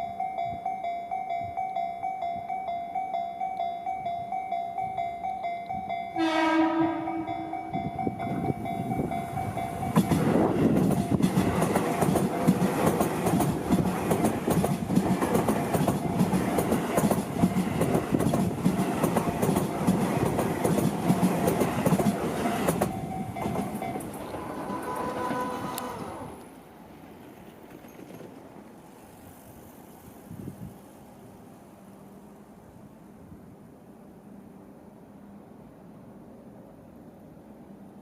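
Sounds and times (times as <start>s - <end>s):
level crossing warning bell: 0.0s - 10.2s, 22.8s - 25.6s
train wheels clattering over rail joints: 9.4s - 26.1s, 27.0s - 28.8s.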